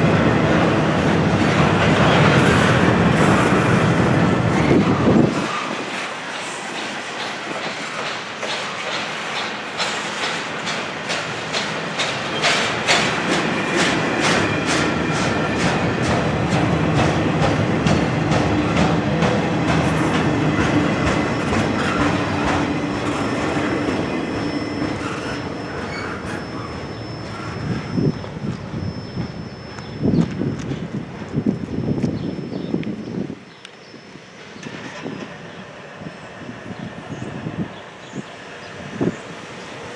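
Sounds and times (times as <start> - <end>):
train rumble: 0.0 - 39.9
train wheels clicking over rail joints: 0.2 - 33.0
thin high tone: 23.0 - 30.6.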